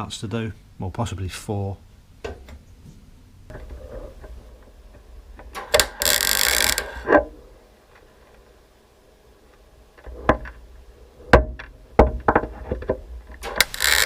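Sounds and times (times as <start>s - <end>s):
welding arc crackling: 5.5s - 7.2s, 13.4s - 14.0s.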